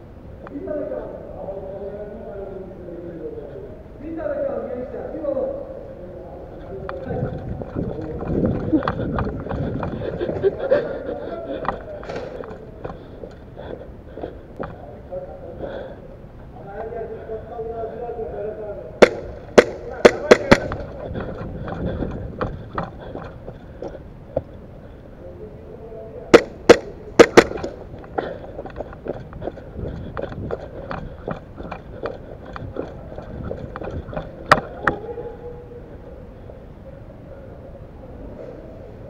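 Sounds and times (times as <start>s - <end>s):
airsoft guns firing: 19.0s - 21.0s, 26.3s - 27.8s.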